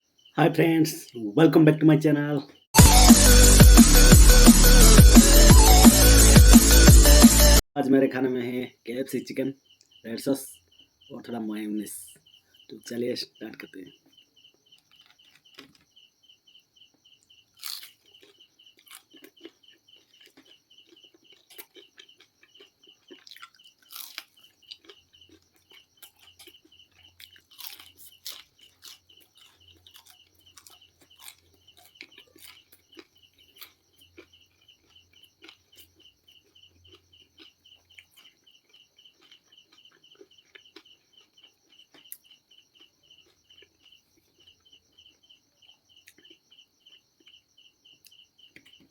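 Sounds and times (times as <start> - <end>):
cricket chirping: 0.0 - 2.6, 7.1 - 48.9
fried chicken being chewed: 14.8 - 15.9, 17.2 - 47.4, 48.0 - 48.9.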